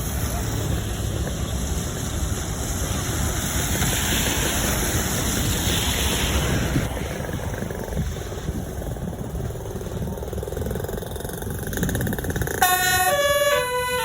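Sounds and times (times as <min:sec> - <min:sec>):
motor vehicle running: 0:00.0 - 0:14.0
wind on microphone: 0:01.4 - 0:13.9.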